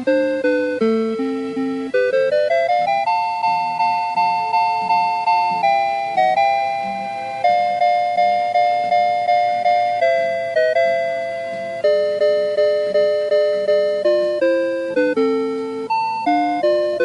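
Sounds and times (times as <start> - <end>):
electronic bell-like chime melody: 0.0 - 17.0.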